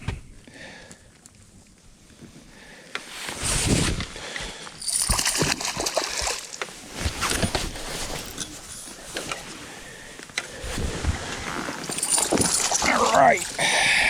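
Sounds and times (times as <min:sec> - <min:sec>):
water splashing and sloshing: 0:04.8 - 0:10.0, 0:10.6 - 0:14.0.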